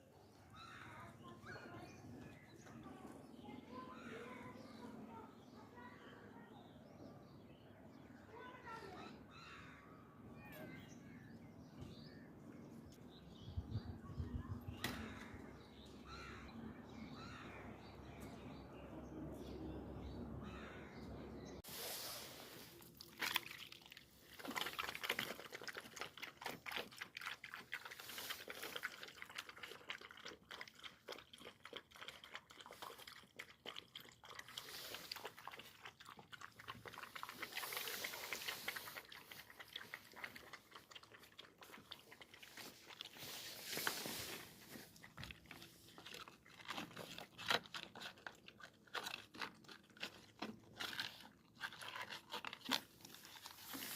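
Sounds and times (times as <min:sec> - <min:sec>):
dog crunching hard food: 0:22.9 - 0:43.2, 0:44.8 - 0:53.9.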